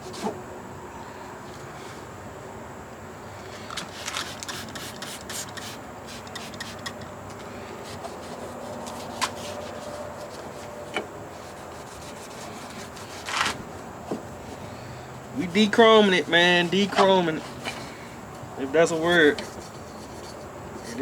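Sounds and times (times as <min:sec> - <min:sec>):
scrubbing on a door handle: 0:03.8 - 0:07.0, 0:07.8 - 0:13.7, 0:15.6 - 0:17.9.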